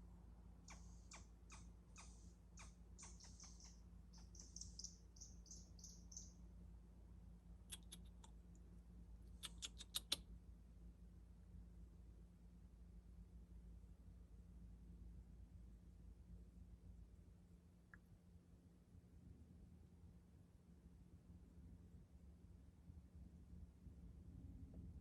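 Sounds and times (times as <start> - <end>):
animal chirps: 0.7 - 6.4, 7.7 - 8.3, 9.4 - 10.2.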